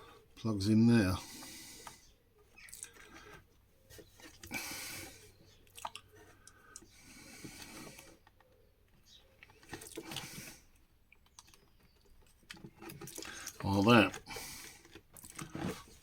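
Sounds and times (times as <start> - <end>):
plastic parts rustling and clicking: 7.9 - 10.2, 11.2 - 16.0.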